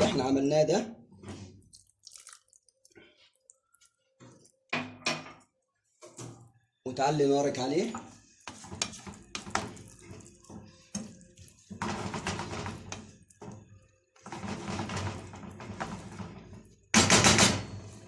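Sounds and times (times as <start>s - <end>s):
sauce bubbling in a pan: 1.6s - 4.8s, 8.2s - 17.0s.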